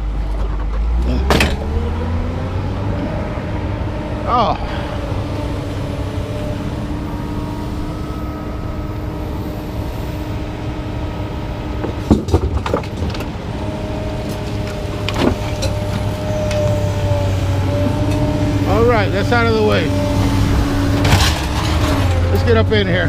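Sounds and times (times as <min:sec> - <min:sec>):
engine humming: 0:00.0 - 0:23.0.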